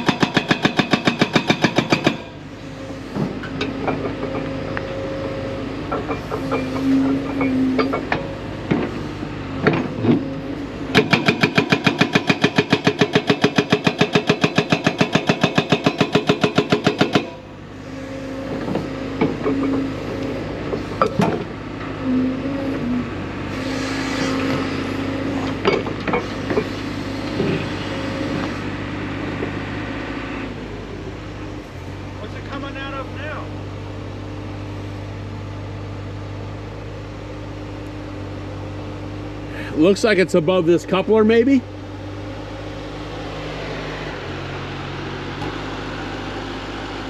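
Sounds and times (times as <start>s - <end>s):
hydraulic breaker hammering: 0.0s - 2.4s, 5.9s - 9.0s, 10.9s - 17.5s, 18.4s - 20.1s
diesel engine running: 0.0s - 47.0s
metal clanks and knocks: 3.1s - 5.0s, 5.9s - 9.0s, 18.5s - 19.9s, 25.4s - 26.8s.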